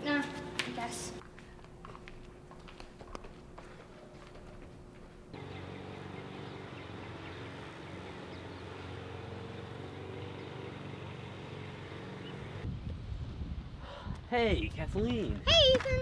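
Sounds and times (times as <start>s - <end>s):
road noise: 5.2s - 13.8s
car engine hum: 5.4s - 12.7s.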